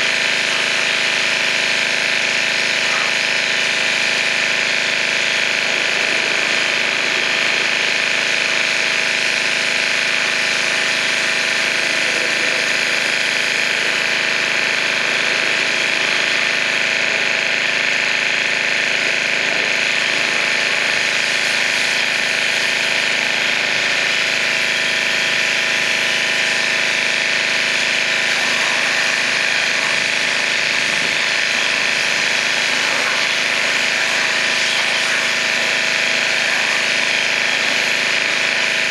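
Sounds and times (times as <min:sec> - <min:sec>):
pressure washer motor droning: 0:00.0 - 0:38.9
water spray hissing: 0:27.7 - 0:38.1.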